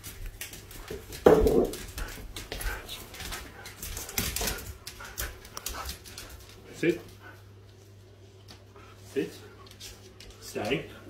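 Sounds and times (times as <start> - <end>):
light clicks and shuffling: 1.8 - 11.0.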